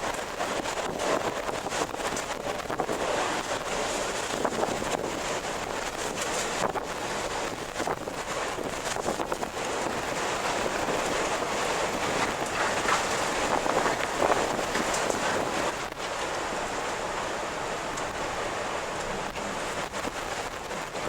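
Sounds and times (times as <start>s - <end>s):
strong wind gusts: 0.0s - 21.0s.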